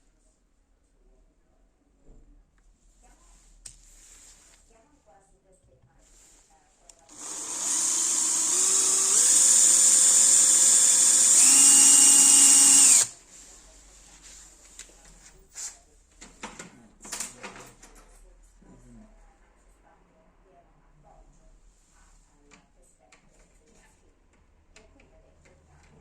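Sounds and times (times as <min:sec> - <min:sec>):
electric drill running: 0:07.1 - 0:13.1.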